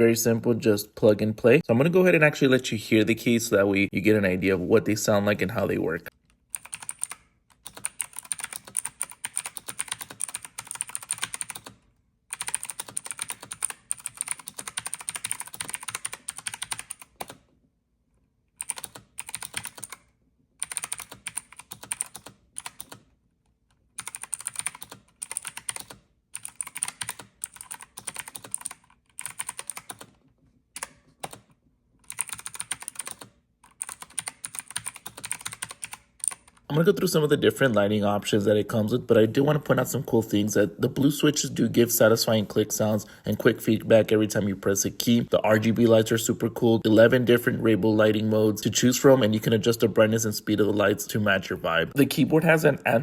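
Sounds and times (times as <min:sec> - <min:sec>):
clicky mechanical keyboard typing: 0:06.5 - 0:17.4, 0:18.6 - 0:23.1, 0:24.0 - 0:30.2, 0:30.8 - 0:36.7.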